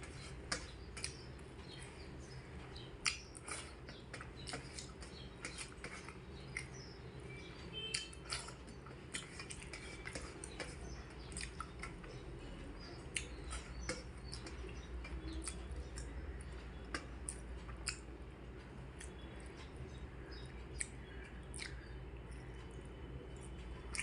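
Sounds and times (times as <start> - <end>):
chewing clicks and smacks: 0.1 - 1.8, 2.8 - 6.9, 7.9 - 12.2, 12.8 - 18.2, 18.9 - 19.8, 20.4 - 22.4, 23.3 - 24.0.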